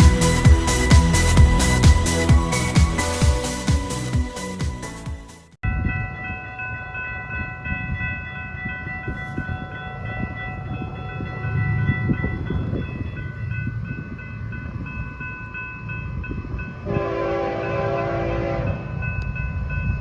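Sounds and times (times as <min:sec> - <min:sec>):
freight train rumbling: 0:00.0 - 0:20.0
rail cars clanking: 0:00.0 - 0:20.0
crossing bell ringing: 0:05.6 - 0:20.0
train horn chord: 0:16.8 - 0:19.0.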